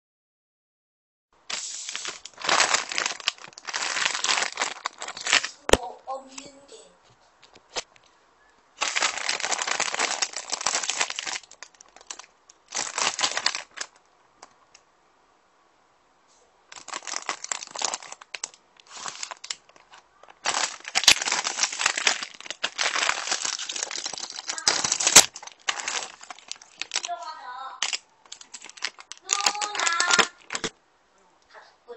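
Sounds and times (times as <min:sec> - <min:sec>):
plastic wrapper crinkling and tearing: 0:01.5 - 0:05.8, 0:08.8 - 0:14.0, 0:16.7 - 0:30.7.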